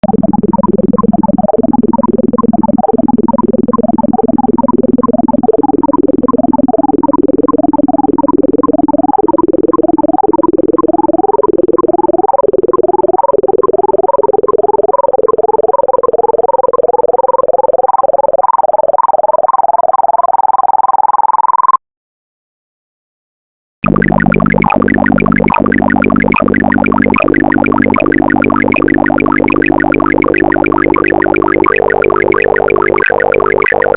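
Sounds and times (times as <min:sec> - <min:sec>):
rapid electronic beeps: 0:00.0 - 0:21.8, 0:23.8 - 0:33.9
held low tone stepping up: 0:23.8 - 0:33.9.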